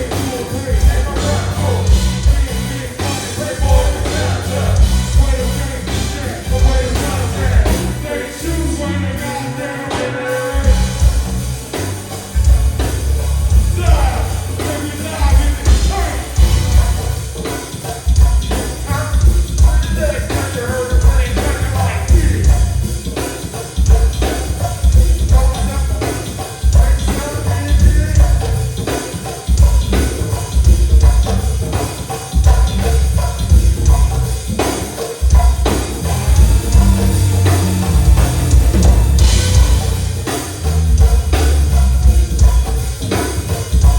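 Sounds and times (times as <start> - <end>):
heavy pulsing bass: 0.0 - 9.6, 10.5 - 17.5, 18.1 - 23.2, 26.6 - 28.8, 32.4 - 34.6, 35.3 - 43.9
person singing: 0.0 - 11.2, 13.8 - 17.0
drum kit: 0.0 - 43.9.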